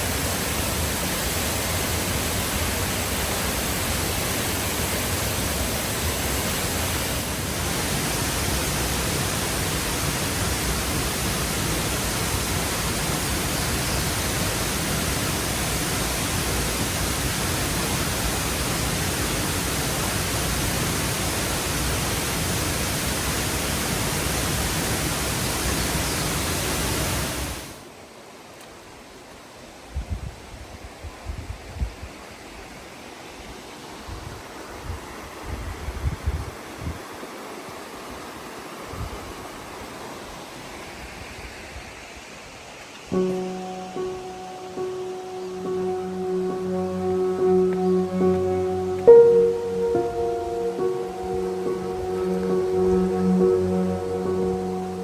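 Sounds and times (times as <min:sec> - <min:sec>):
waterfall rushing: 0:00.0 - 0:27.8, 0:43.1 - 0:55.0.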